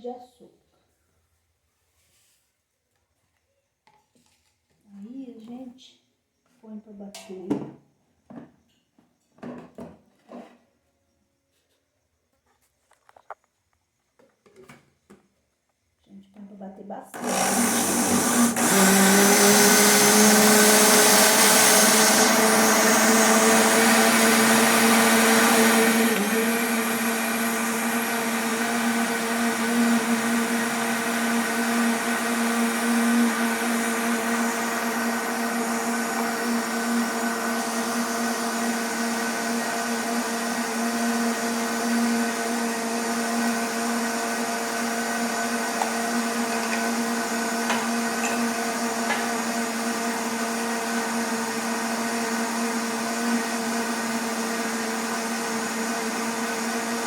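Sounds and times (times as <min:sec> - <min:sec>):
blender motor running: 0:17.1 - 0:57.0.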